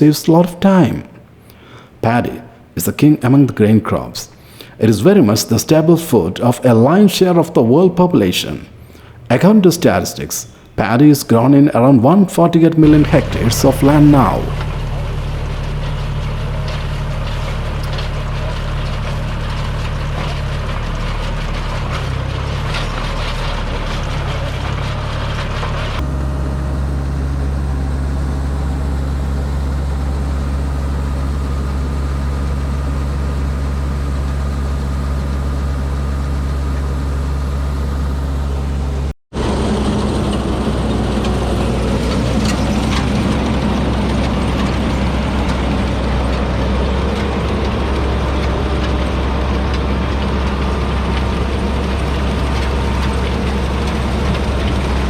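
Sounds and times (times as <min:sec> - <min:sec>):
harvesting machine engine humming: 0:12.8 - 0:55.0.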